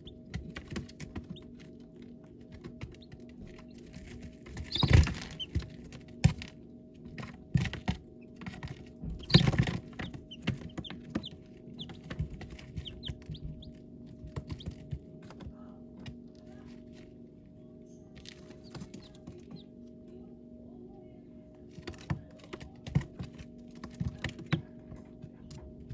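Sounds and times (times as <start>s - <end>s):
baby chicks peeping: 0.0s - 17.0s, 17.7s - 20.3s.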